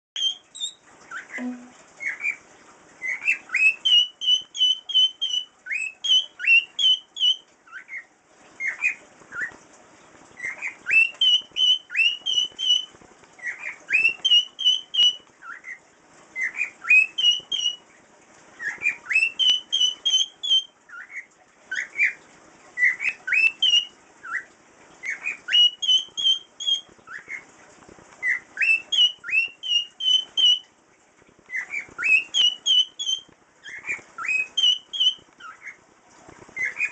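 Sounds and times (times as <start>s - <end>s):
cockatiel whistling a tune: 0.2s - 2.4s, 3.0s - 8.0s, 10.4s - 15.8s, 16.4s - 17.8s, 18.6s - 22.2s, 22.8s - 27.4s, 28.2s - 30.7s, 31.5s - 35.8s.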